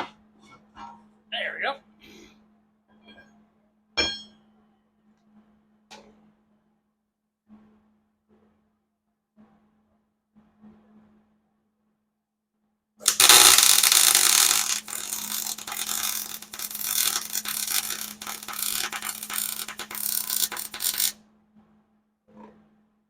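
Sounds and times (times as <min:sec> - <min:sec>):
welding crackling sizzle: 0:13.0 - 0:21.2.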